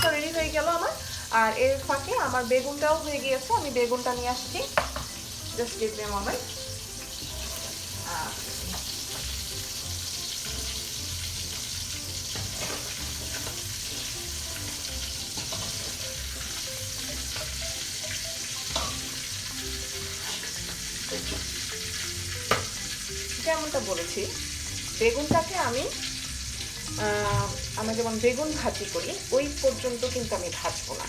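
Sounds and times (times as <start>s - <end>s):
eggplant slices sizzling in oil: 0.0s - 31.0s
light knocks on pan: 4.8s - 5.1s, 22.5s - 22.8s.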